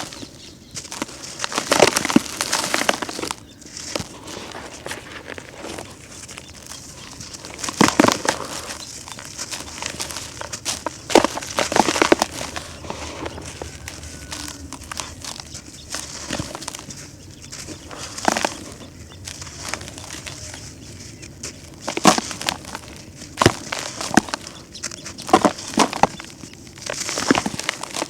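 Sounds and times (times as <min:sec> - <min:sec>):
concrete crunching and snapping: 0:00.0 - 0:28.0
low crumbling rustle: 0:00.0 - 0:28.0.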